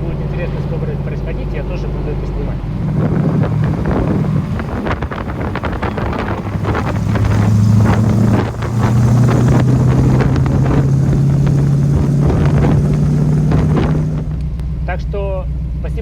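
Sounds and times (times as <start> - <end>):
car engine running: 0.0 - 16.0
wind buffeting microphone: 2.5 - 14.4.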